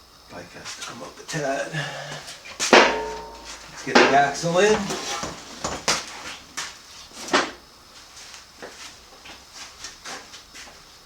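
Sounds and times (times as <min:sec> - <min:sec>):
metal knocks and clunks: 0:02.6 - 0:05.4.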